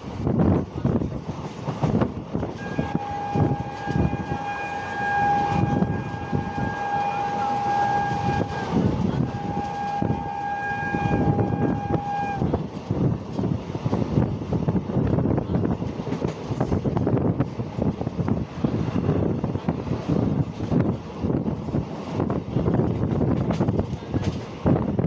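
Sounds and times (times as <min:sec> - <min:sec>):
train wheels clattering on rails: 0:00.0 - 0:25.0
train horn blasts: 0:02.4 - 0:12.6.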